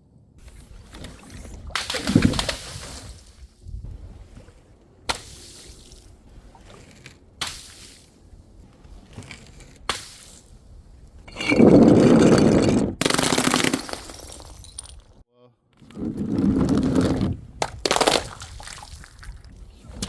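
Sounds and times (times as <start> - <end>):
glass bottles smashing: 11.3 - 15.2.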